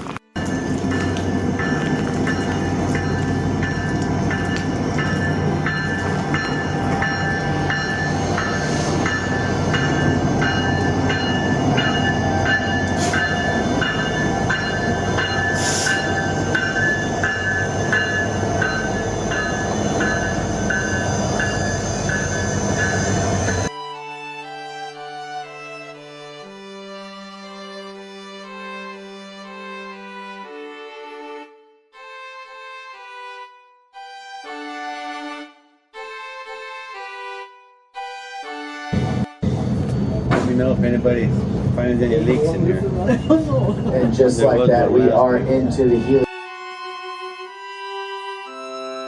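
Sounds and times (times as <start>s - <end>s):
diesel locomotive running: 0.0s - 23.7s, 38.8s - 49.0s
bell ringing: 0.4s - 23.7s
short hisses: 15.6s - 16.0s.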